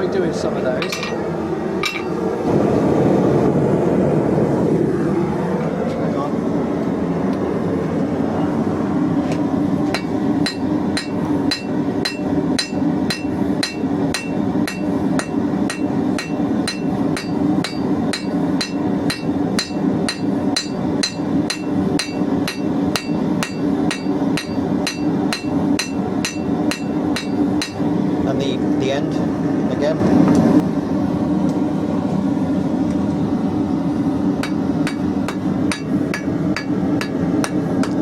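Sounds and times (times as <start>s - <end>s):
gas forge roaring: 0.0s - 38.0s
hammer striking steel on anvil: 0.8s - 1.2s, 1.8s - 2.2s, 9.9s - 27.9s, 34.4s - 38.0s.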